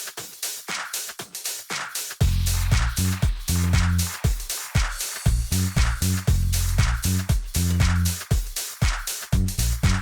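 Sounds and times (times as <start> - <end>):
electronic dance music: 1.9 - 10.0
heavy bass line: 2.2 - 4.2, 5.3 - 8.2, 9.4 - 10.0.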